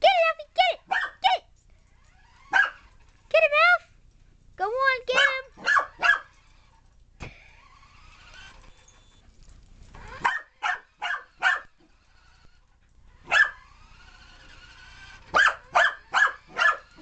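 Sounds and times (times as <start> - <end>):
puppy barking: 0.8 - 1.4, 2.5 - 2.9, 5.1 - 6.4, 10.1 - 11.8, 13.2 - 13.7, 15.3 - 17.0.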